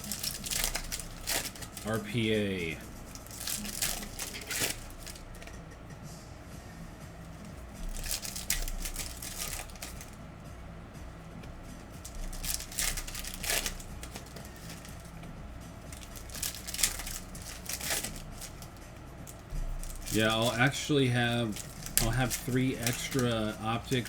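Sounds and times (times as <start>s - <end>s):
foil wrappers crinkling and tearing: 0.0s - 5.6s, 7.4s - 10.2s, 12.0s - 24.0s
cards being handled: 0.0s - 5.7s, 7.2s - 10.4s, 11.3s - 24.0s.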